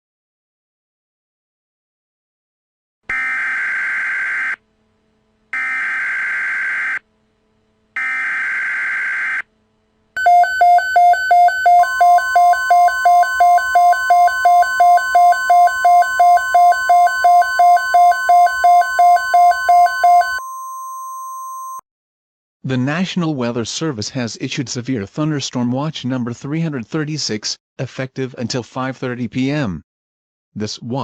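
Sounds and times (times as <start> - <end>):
pulsing alarm beeping: 5.6 - 7.0, 8.0 - 9.4, 10.2 - 20.5
steady high warning tone: 10.2 - 20.6.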